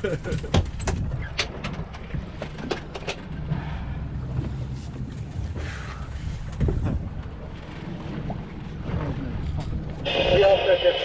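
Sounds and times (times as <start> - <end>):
boat engines rumbling: 0.0 - 11.0
wind on microphone: 5.4 - 7.2.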